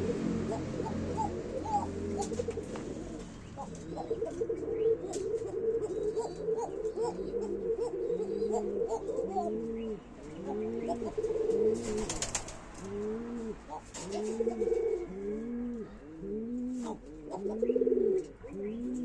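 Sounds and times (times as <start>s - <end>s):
pigeons cooing: 0.0s - 19.0s.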